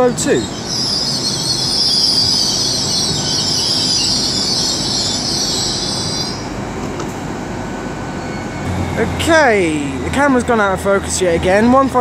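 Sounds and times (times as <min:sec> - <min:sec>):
train wheels and brakes squealing: 0:00.0 - 0:06.5, 0:08.0 - 0:08.7
low train rumble: 0:00.0 - 0:12.0.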